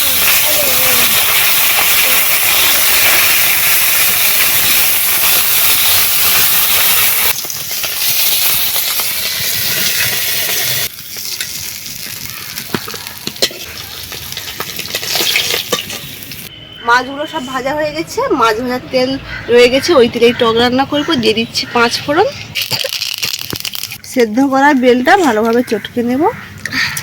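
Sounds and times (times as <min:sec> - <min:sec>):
fish frying in oil: 0:00.0 - 0:16.5, 0:22.6 - 0:24.0.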